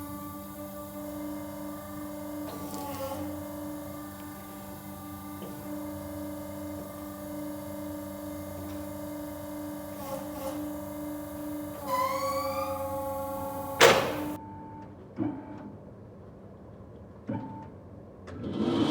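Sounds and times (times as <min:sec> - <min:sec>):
sawmill machinery humming: 0:00.0 - 0:14.4.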